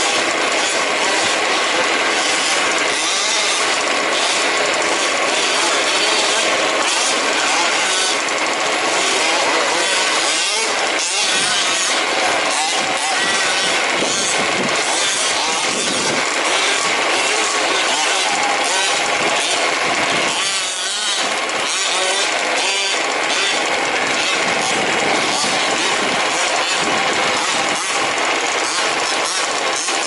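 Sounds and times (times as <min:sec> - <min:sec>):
rc truck engines buzzing: 0:00.0 - 0:30.0.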